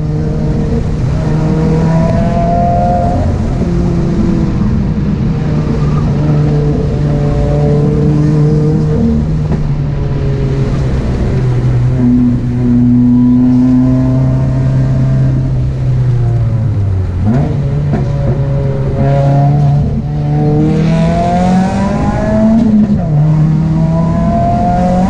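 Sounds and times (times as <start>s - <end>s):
car engine revving hard: 0.0s - 9.6s, 17.1s - 25.0s.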